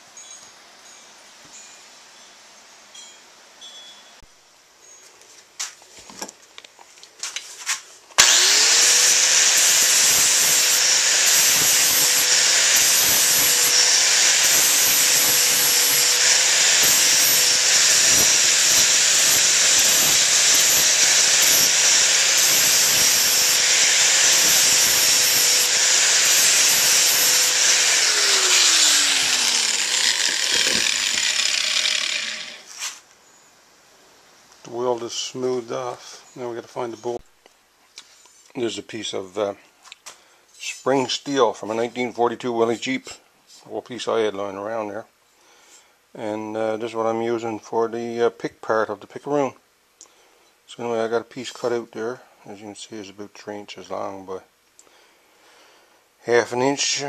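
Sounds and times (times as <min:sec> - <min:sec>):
electric grinder grinding metal: 0:08.2 - 0:32.9.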